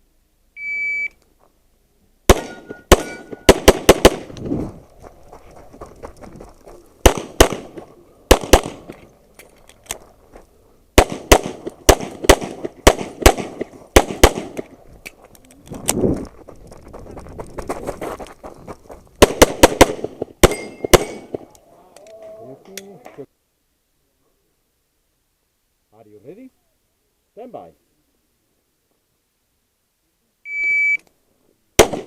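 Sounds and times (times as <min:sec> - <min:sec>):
handgun firing rapid shots: 0:02.3 - 0:04.3, 0:07.1 - 0:07.7, 0:08.3 - 0:08.9, 0:11.0 - 0:14.6, 0:19.2 - 0:21.3, 0:31.8 - 0:32.0
shot timer beep: 0:30.5 - 0:31.0.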